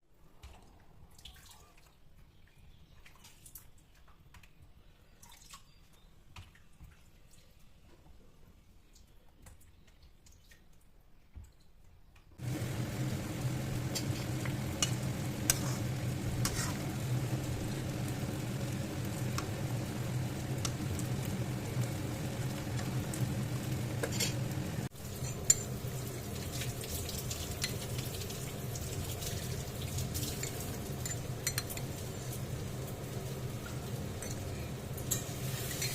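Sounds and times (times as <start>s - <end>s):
faint clicks and drips: 0.4s - 8.2s, 8.8s - 12.3s
low hum: 12.4s - 24.9s
food cooking in a pot: 12.4s - 35.9s.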